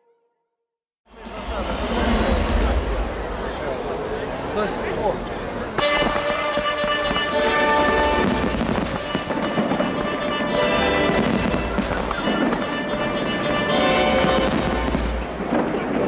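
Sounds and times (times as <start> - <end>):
fireworks bangs and crackles: 1.1 - 16.0
music playing: 1.2 - 15.4.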